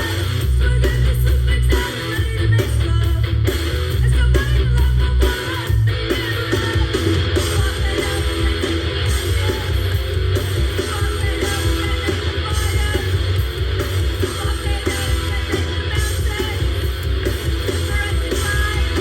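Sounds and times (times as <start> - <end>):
bass: 0.0 - 19.0
distorted electric guitar strumming: 0.0 - 19.0
drums: 0.0 - 19.0.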